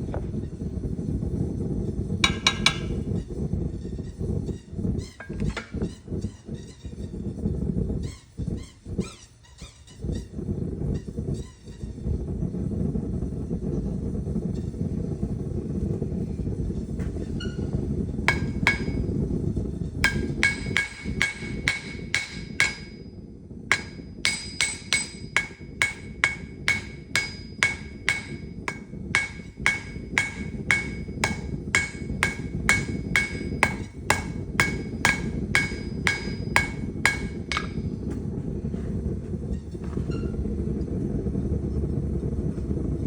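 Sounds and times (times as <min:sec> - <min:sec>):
steady low rumble: 0:00.0 - 0:06.2, 0:12.0 - 0:43.0
hammer striking anvil: 0:02.2 - 0:03.0, 0:18.3 - 0:19.1, 0:20.0 - 0:23.1, 0:23.7 - 0:37.9.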